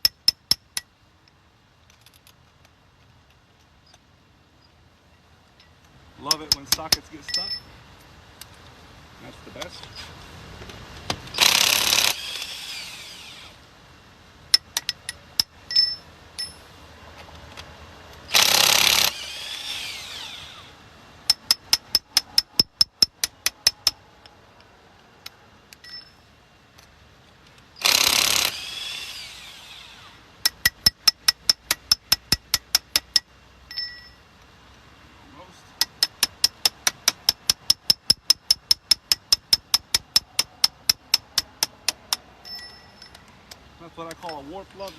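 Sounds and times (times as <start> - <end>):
impact wrench hammering: 6.3 - 7.6, 14.5 - 16.6, 18.3 - 19.9, 21.3 - 24.0, 27.8 - 29.2, 30.4 - 34.2, 35.8 - 43.2.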